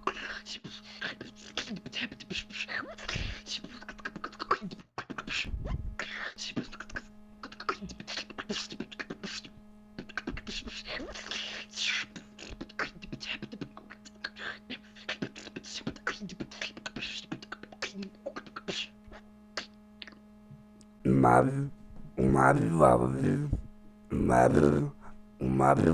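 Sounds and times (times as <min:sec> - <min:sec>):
person beatboxing: 0:00.0 - 0:20.2
steady low hum: 0:00.0 - 0:25.9.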